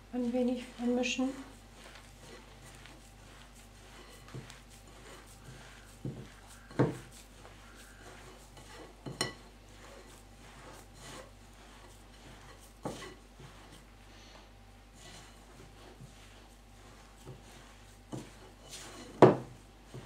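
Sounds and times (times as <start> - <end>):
hands rubbing dough in bowl: 0.0 - 20.0.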